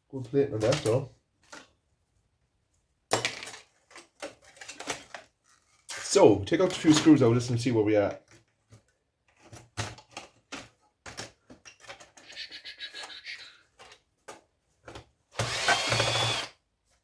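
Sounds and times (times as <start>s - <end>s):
power drill-driver running: 15.4s - 16.6s.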